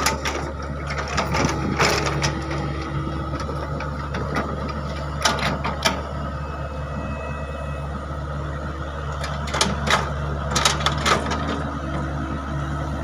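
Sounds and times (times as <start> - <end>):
excavator running under load: 0.0 - 13.0
metallic clanks and rattles: 9.2 - 11.6.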